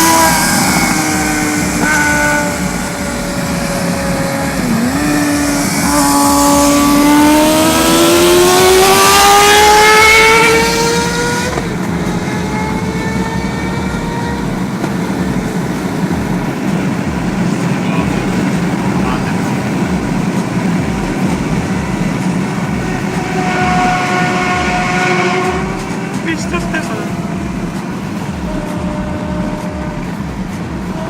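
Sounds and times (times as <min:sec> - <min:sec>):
motorcycle engine at high revs: 0:00.0 - 0:31.0.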